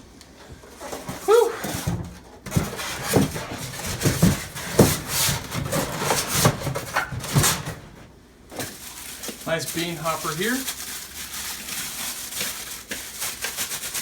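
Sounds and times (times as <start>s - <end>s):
packaging rustling and scraping: 0.4s - 14.0s.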